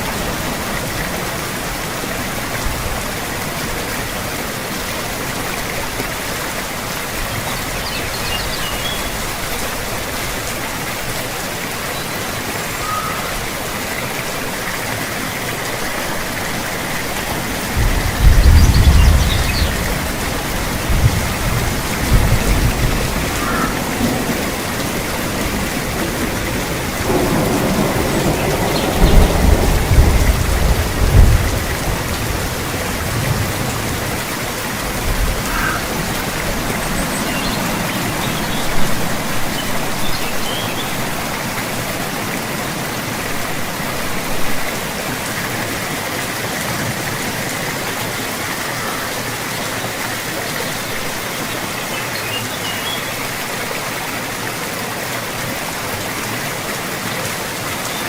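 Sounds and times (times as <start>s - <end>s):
steady rain hiss: 0.0s - 58.0s
low rolls of thunder: 17.2s - 39.8s.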